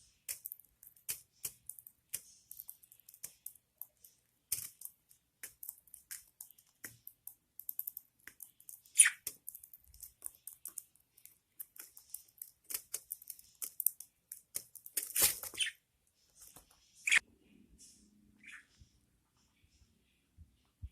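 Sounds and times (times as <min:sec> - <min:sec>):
small clicks and scratches: 0:00.2 - 0:17.2
bird squeak: 0:08.9 - 0:09.3, 0:15.4 - 0:15.8, 0:17.0 - 0:17.2, 0:18.4 - 0:18.8.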